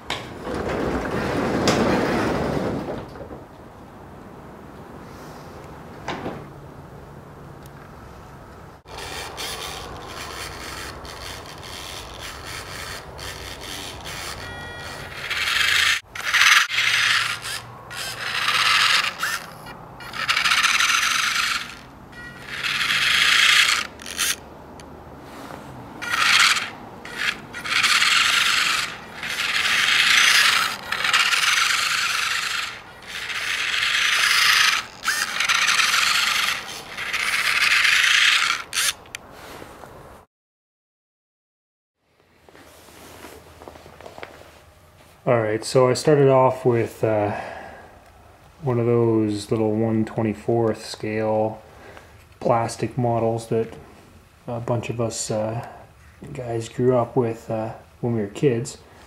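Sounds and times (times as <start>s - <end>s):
toy truck motor whirring: 8.9s - 24.9s, 26.0s - 39.2s.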